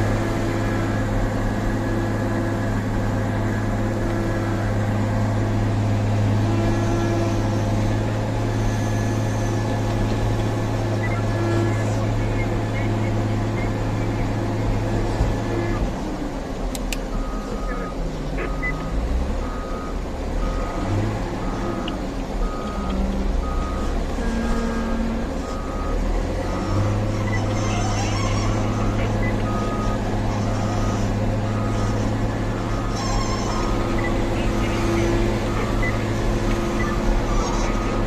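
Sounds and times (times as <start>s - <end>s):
diesel engine running: 0.0s - 38.0s
reversing alarm beeping: 10.9s - 14.4s, 17.1s - 38.0s.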